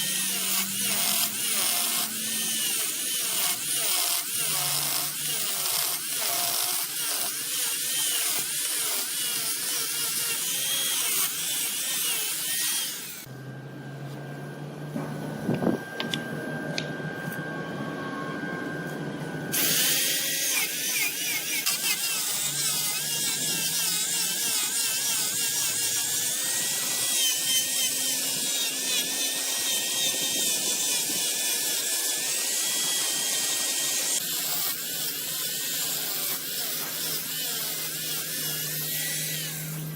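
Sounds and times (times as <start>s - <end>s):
wood lathe cutting wood: 0.0s - 13.3s, 19.6s - 39.9s
motor hum: 12.9s - 24.0s.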